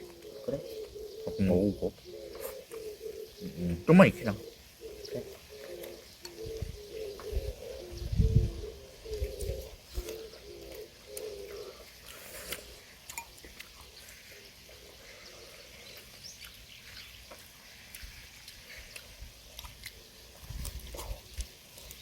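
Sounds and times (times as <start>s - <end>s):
dove cooing: 0.0s - 12.9s.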